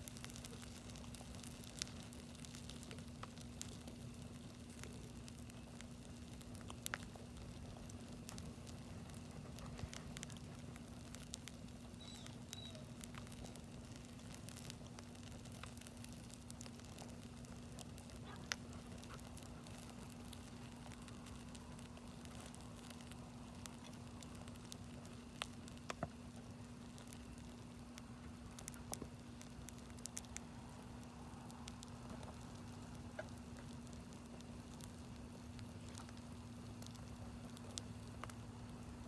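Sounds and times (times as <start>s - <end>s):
campfire crackling and popping: 0.0s - 39.0s.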